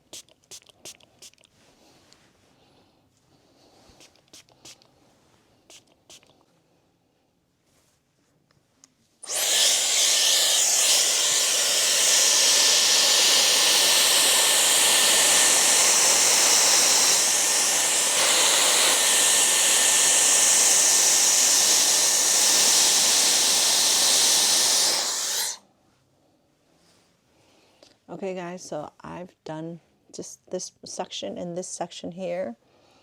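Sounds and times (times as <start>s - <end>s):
hot-air brush blowing with whine: 9.2s - 25.6s.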